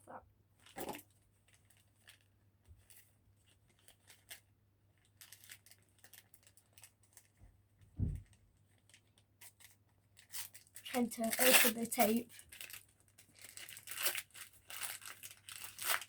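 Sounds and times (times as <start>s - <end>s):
package rustling and crinkling: 0.6s - 7.4s, 8.0s - 16.0s
dull thump: 8.0s - 8.2s.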